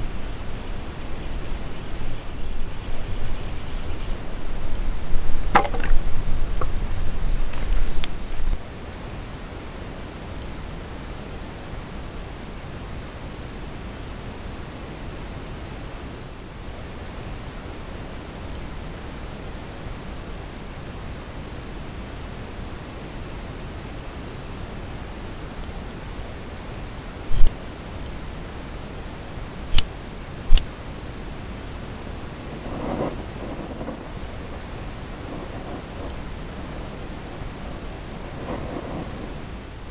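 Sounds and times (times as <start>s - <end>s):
high-pitched insect trill: 0.0s - 9.4s, 23.8s - 39.9s
sharp clicks: 27.3s - 27.5s.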